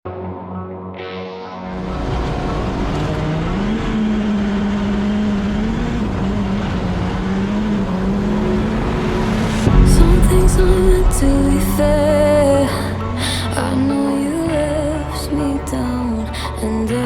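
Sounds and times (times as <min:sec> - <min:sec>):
broad rushing noise: 0:01.8 - 0:14.1
motor droning hum: 0:01.8 - 0:16.6.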